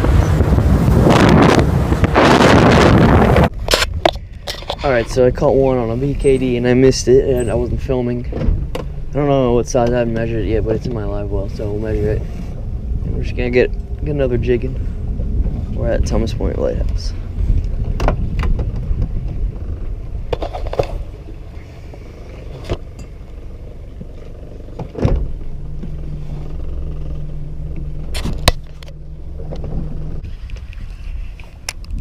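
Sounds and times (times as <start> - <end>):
low motor hum: 0.0 - 32.0
low rumble aboard boat: 0.0 - 32.0.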